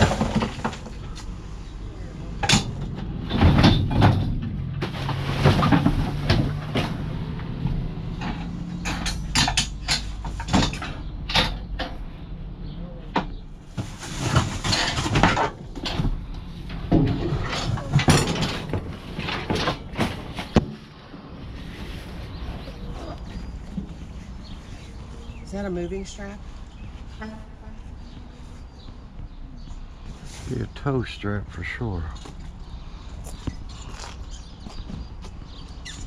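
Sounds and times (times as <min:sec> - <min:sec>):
hard objects knocking and clanking: 0:00.0 - 0:01.3, 0:02.4 - 0:12.0, 0:13.1 - 0:20.8.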